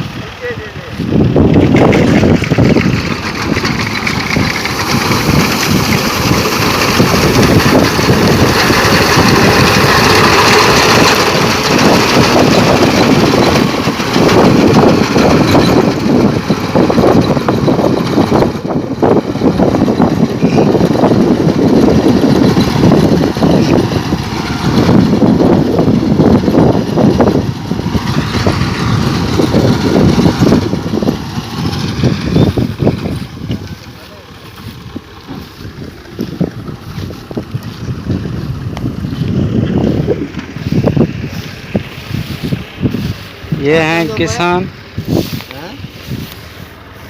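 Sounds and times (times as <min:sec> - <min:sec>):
harvesting machine engine drone: 0:00.0 - 0:47.0
mechanical clatter: 0:01.4 - 0:38.2.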